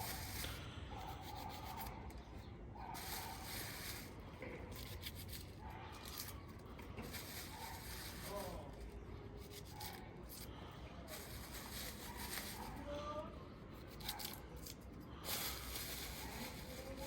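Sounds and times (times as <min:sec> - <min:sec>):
rubbing and scraping in potting soil: 0:00.0 - 0:17.0.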